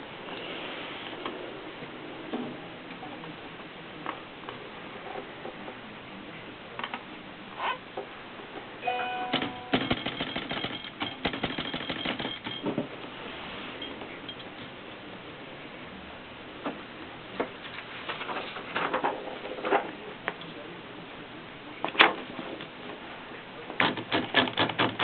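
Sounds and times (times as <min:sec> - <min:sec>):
typewriter bell ringing: 0:08.8 - 0:12.7.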